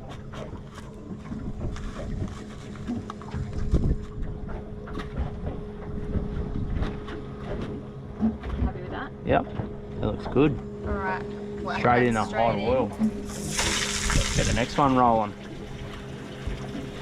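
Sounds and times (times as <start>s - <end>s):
steady low hum: 0.0s - 17.0s
wind on microphone: 3.3s - 7.0s.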